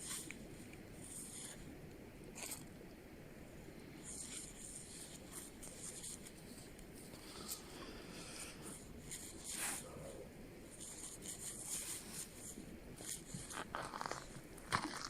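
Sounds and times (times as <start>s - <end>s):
scratchy rustles and scrapes: 4.0s - 7.8s, 8.6s - 10.1s, 10.7s - 15.0s.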